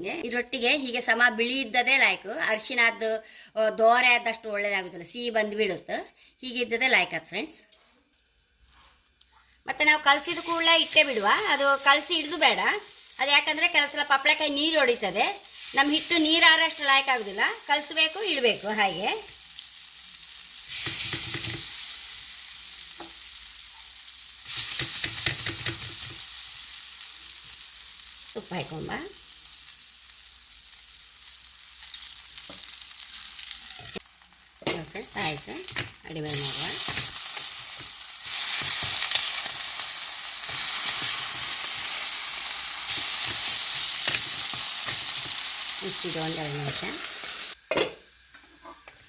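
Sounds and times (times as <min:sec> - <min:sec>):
batter sizzling on a pan: 0:10.0 - 0:47.7.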